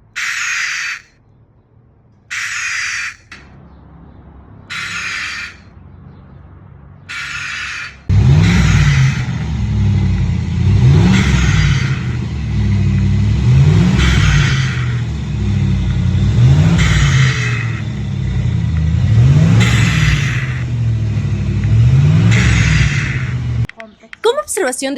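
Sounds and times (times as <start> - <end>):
engine-like tone rising and falling: 8.1 - 23.7.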